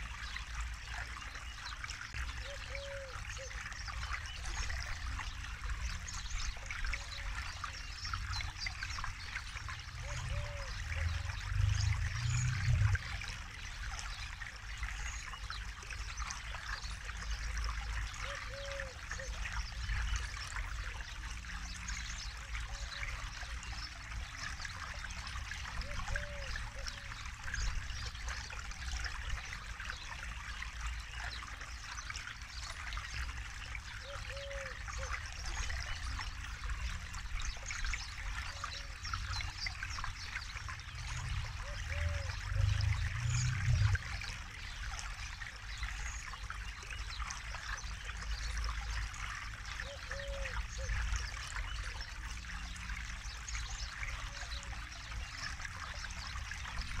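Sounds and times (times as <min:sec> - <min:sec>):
river flowing: 0:00.0 - 0:57.0
low rumble: 0:42.4 - 0:44.2.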